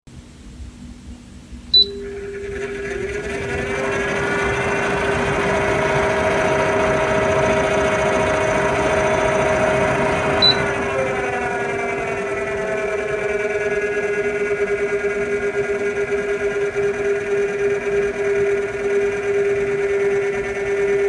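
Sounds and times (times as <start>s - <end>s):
appliance beep: 1.7s - 2.9s, 10.1s - 11.3s
motor whine: 1.8s - 21.0s.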